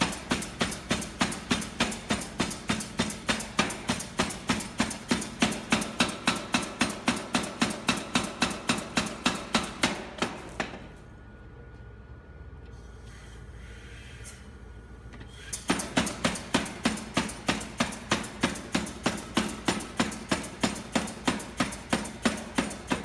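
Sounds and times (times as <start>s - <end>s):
air hammer striking: 0.0s - 10.9s, 15.5s - 23.0s.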